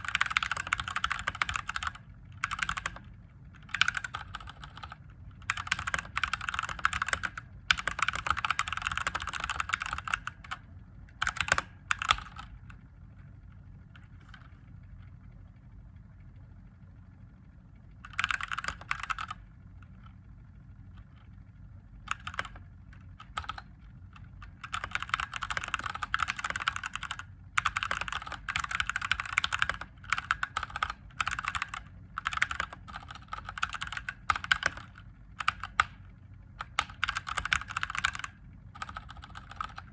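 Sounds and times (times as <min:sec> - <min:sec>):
mechanical keyboard key clacks: 0:11.2 - 0:12.5, 0:24.4 - 0:36.0, 0:36.6 - 0:39.9.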